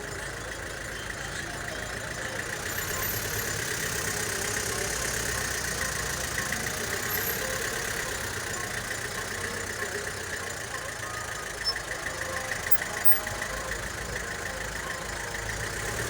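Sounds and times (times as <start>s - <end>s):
road noise: 0.0s - 16.0s
vehicle engine running: 0.0s - 16.0s.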